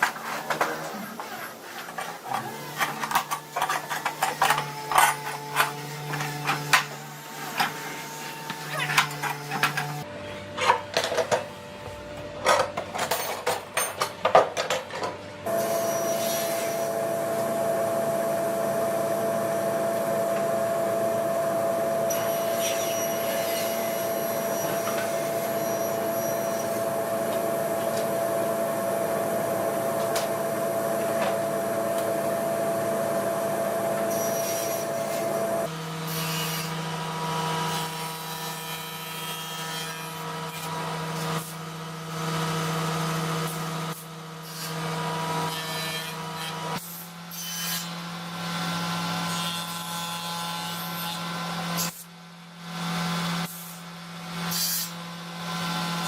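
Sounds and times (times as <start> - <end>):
power tool whining: 15.5 - 35.8.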